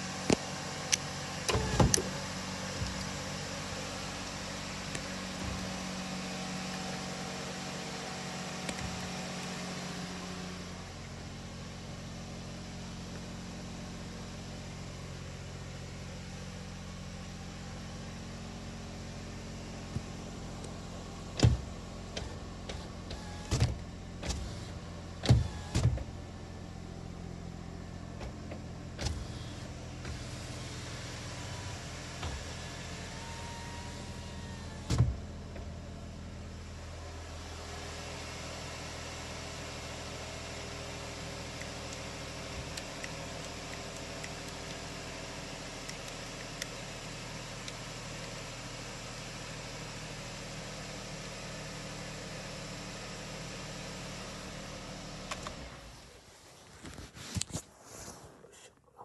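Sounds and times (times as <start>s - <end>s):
car power window motor: 0.2s - 7.2s, 8.2s - 11.2s, 19.9s - 26.3s, 28.1s - 35.8s.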